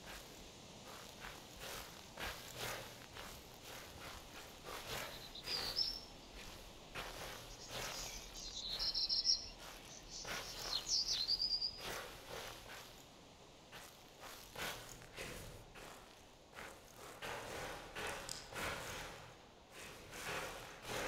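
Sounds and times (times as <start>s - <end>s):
footsteps outdoors: 0.0s - 21.0s
high-pitched chirping: 4.9s - 6.1s, 7.4s - 11.9s.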